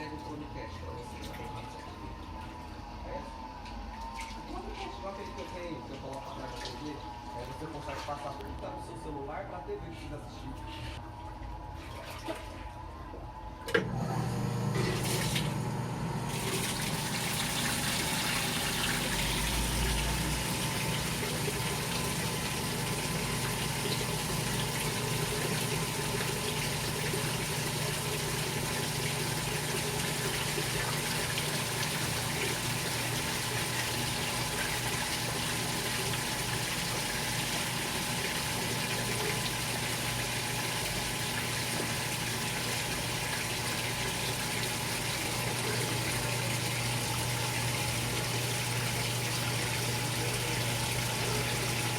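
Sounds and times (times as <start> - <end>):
low electrical hum: 0.0 - 51.9
water rushing through machine: 13.8 - 51.9.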